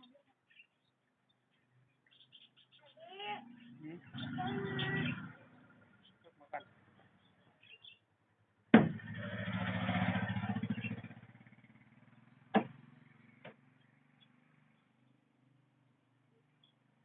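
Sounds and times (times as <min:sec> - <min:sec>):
sharp knock: 0:08.7 - 0:09.0, 0:12.5 - 0:12.8.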